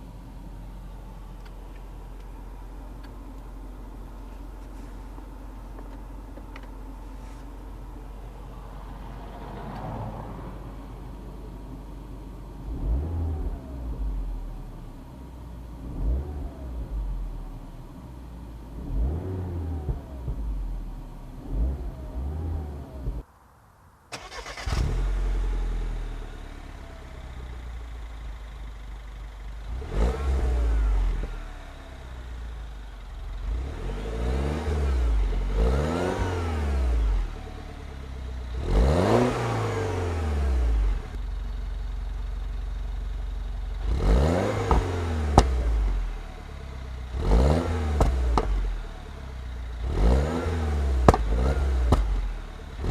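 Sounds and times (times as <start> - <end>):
car engine revving: 0.0 - 15.1, 15.7 - 23.2, 24.1 - 28.4, 29.6 - 41.3, 43.7 - 52.9
exhaust pops and bangs: 19.8 - 20.8, 44.6 - 45.7, 47.9 - 48.7, 51.0 - 52.9.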